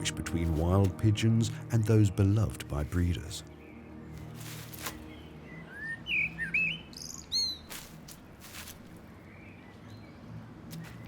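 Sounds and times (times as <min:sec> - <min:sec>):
bird chirping: 0:02.0 - 0:08.0, 0:08.9 - 0:11.0.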